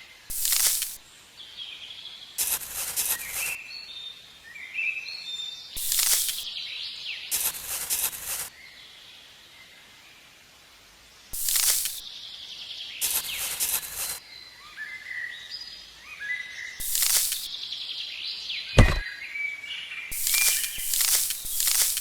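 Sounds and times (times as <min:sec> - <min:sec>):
rushing hiss-like noise: 0:00.3 - 0:01.0, 0:02.4 - 0:03.6, 0:05.8 - 0:06.5, 0:07.3 - 0:08.6, 0:11.3 - 0:12.0, 0:13.0 - 0:14.2, 0:16.8 - 0:17.5, 0:20.1 - 0:22.0
small birds chirping: 0:00.3 - 0:04.6, 0:05.6 - 0:08.5, 0:12.8 - 0:14.8, 0:16.8 - 0:19.0, 0:20.0 - 0:22.0
sharp thump: 0:18.8 - 0:19.0.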